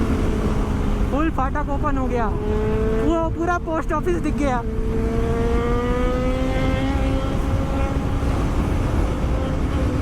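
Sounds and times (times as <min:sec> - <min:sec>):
motorcycle engine at high revs: 0:00.0 - 0:10.0
wind rumble on microphone: 0:00.0 - 0:10.0.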